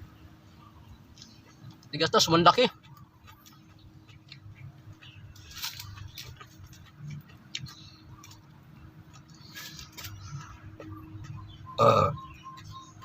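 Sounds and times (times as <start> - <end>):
crisp chewing crunches: 2.8 - 10.6.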